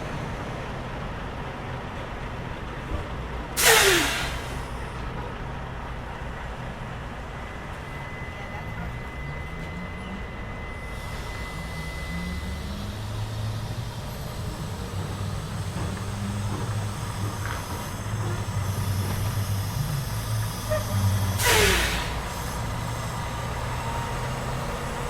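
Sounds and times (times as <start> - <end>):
heavy vehicle engine running: 0.0 - 25.0
street traffic: 0.0 - 25.0
faint high whine: 7.2 - 13.6.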